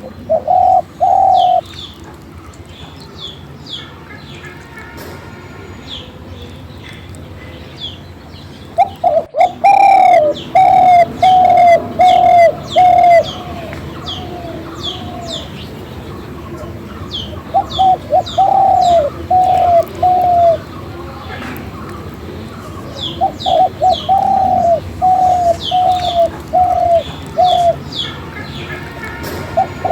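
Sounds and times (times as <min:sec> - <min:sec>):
bird cooing: 0:00.0 - 0:01.8, 0:08.8 - 0:29.9
birds high chirps: 0:00.0 - 0:29.9.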